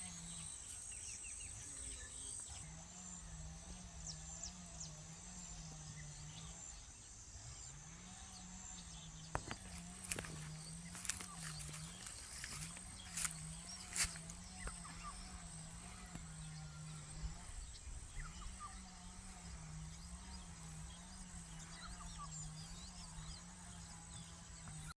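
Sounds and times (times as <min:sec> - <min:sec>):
high insect drone: 0:00.0 - 0:24.8
low wavering hum: 0:02.6 - 0:24.9
bird chirps: 0:08.8 - 0:24.4.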